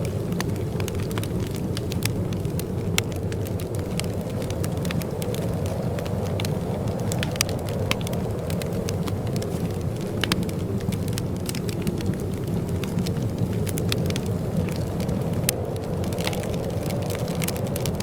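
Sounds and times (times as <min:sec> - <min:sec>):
fire pops and snaps: 0:00.0 - 0:18.0
wood fire crackling: 0:00.0 - 0:18.0.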